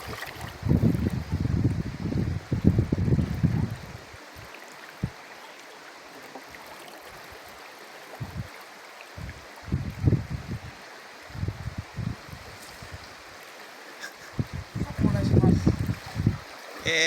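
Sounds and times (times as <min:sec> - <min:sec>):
river water rushing over stones: 0:00.0 - 0:01.2, 0:04.0 - 0:09.8, 0:12.2 - 0:17.0.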